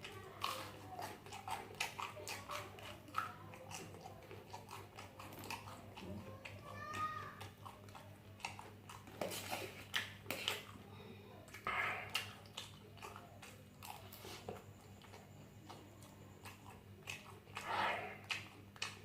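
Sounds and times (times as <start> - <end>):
chewing and mouth smacks: 0.0 - 19.0
low electrical hum: 0.0 - 19.0.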